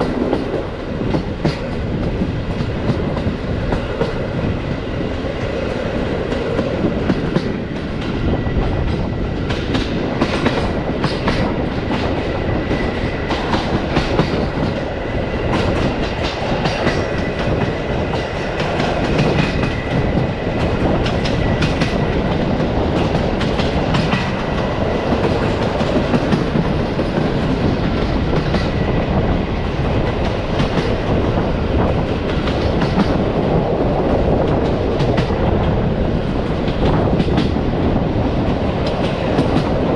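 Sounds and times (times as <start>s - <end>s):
train wheels rumbling: 0.0s - 39.9s
wheels clicking over rail joints: 29.5s - 33.3s.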